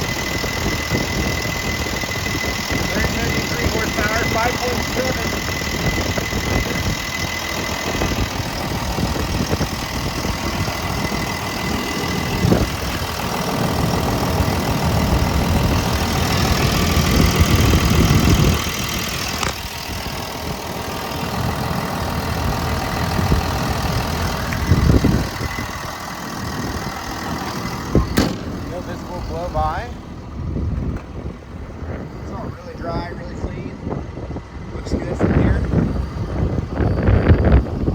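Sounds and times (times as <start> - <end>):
diesel engine idling: 0.0 - 37.9.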